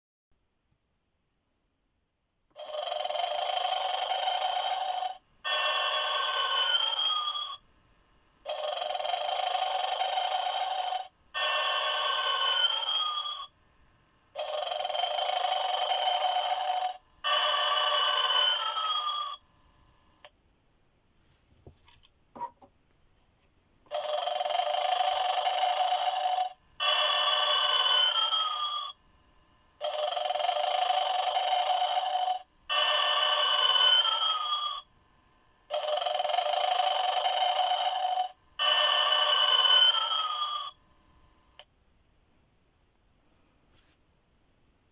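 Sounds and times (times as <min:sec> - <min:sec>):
toy snoring with whistle: 0:02.6 - 0:07.6, 0:08.4 - 0:13.5, 0:14.4 - 0:19.4, 0:23.9 - 0:29.0, 0:29.8 - 0:34.9, 0:35.7 - 0:40.8.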